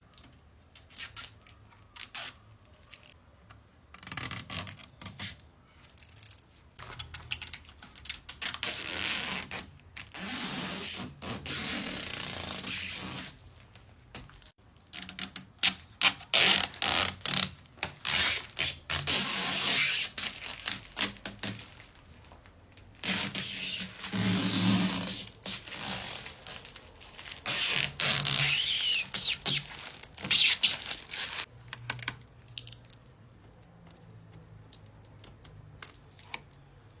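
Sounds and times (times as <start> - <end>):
packaging tearing and rustling: 16.1 - 31.5.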